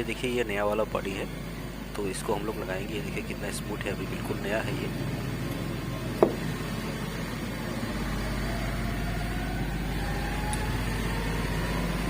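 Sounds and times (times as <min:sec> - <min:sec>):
sharp knock: 0:06.2 - 0:06.4.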